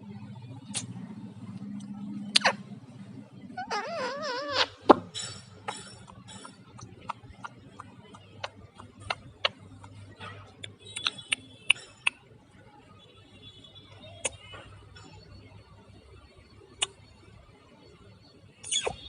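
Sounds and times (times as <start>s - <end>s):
parrot squeaky chirps: 3.4s - 7.8s
parrot clicking: 5.7s - 12.2s.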